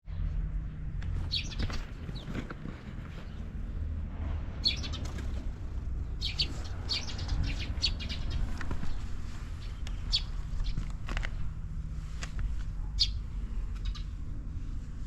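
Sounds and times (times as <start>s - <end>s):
low steady rumble: 0.1s - 15.0s
small birds chirping: 1.1s - 3.6s, 4.6s - 5.4s, 6.0s - 11.6s, 12.7s - 14.3s.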